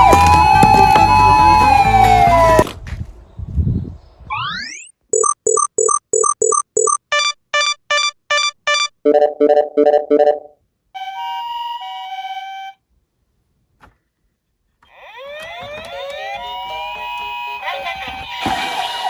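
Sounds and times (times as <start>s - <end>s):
short synth beeps: 5.2s - 10.5s.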